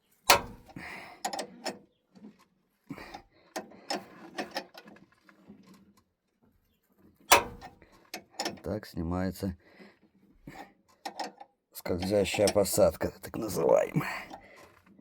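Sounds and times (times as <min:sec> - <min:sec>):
metallic clicks and knocks of tools: 0:07.3 - 0:08.7, 0:10.9 - 0:12.7.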